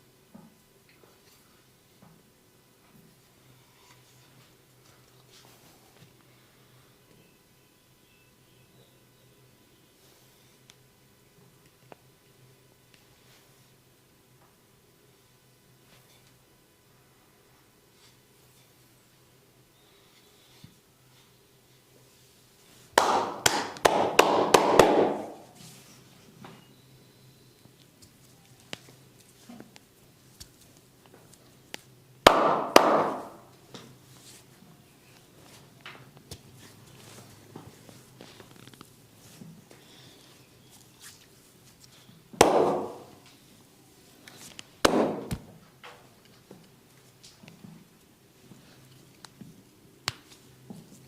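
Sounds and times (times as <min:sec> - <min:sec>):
hands slapping body: 0:23.0 - 0:25.5, 0:32.3 - 0:33.4, 0:42.4 - 0:43.2, 0:44.8 - 0:45.5, 0:50.0 - 0:50.4
hands rubbing and clicking: 0:50.0 - 0:51.0.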